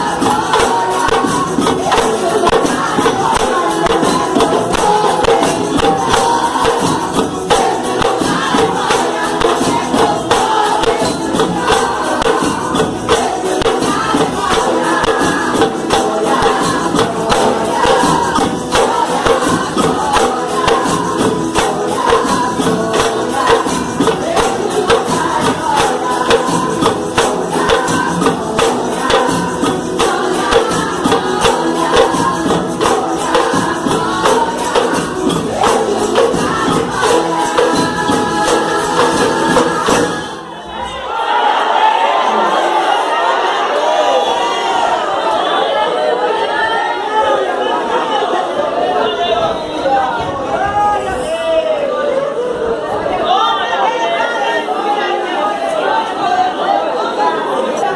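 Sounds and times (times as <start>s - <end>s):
fast percussion: 0.0s - 43.4s
group singing: 0.0s - 57.9s.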